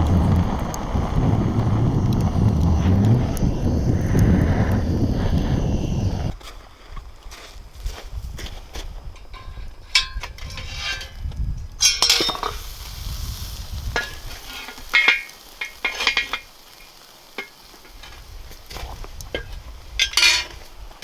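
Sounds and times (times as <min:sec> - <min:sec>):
metal utensil scraping metal pan: 0:09.4 - 0:11.2, 0:14.0 - 0:18.2, 0:20.0 - 0:20.6.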